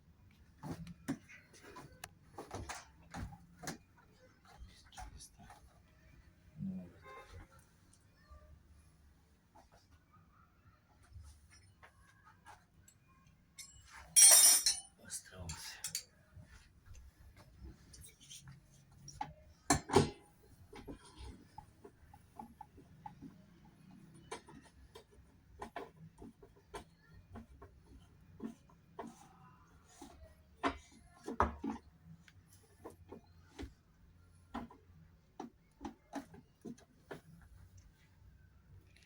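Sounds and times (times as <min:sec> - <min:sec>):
tools clicking and knocking: 0:13.6 - 0:14.9.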